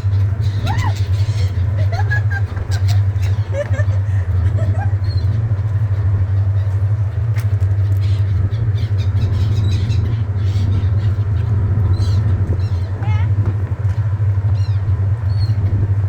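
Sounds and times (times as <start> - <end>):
seagull cries: 0.0 - 7.0
loud low engine drone: 0.0 - 16.0.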